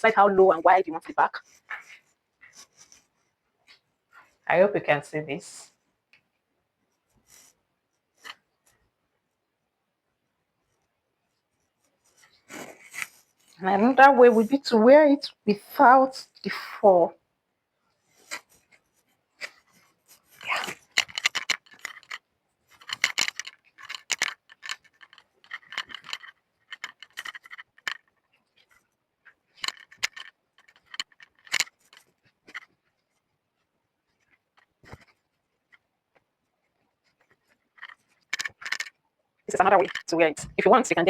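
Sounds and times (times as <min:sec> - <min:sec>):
jacket fabric rustling: 0:10.6 - 0:14.8.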